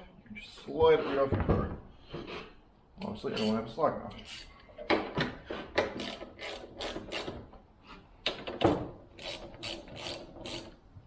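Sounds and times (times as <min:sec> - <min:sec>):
ratchet wrench clicking: 0:03.4 - 0:03.6, 0:04.2 - 0:04.5, 0:06.0 - 0:07.4, 0:09.2 - 0:10.8.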